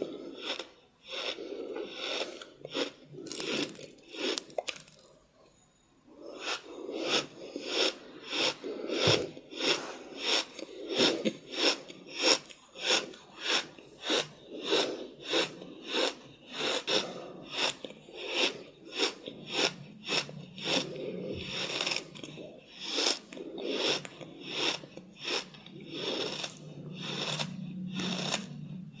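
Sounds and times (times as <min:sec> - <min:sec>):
heavy rapid breathing: 0:06.2 - 0:12.2, 0:12.8 - 0:29.0
low steady hum: 0:17.0 - 0:29.0.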